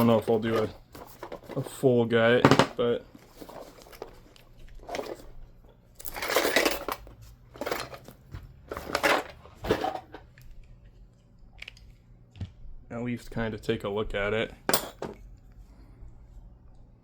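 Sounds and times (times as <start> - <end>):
metal tools clinking and rattling: 2.4 - 5.4, 6.0 - 10.2, 14.7 - 15.2.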